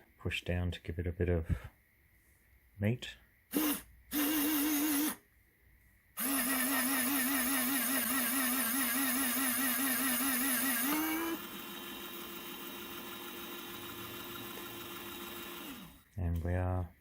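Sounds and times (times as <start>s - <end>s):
small electric motor whine: 3.5s - 5.2s, 6.2s - 16.1s.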